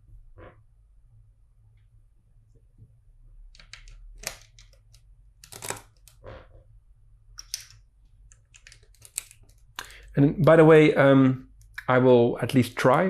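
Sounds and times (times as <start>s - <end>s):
plastic bricks clicking: 7.4s - 10.0s.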